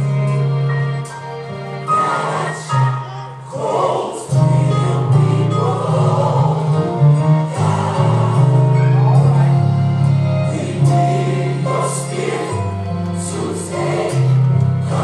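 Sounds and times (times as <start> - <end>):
choir singing gospel music: 1.5 - 15.0
held bass notes: 4.4 - 15.0.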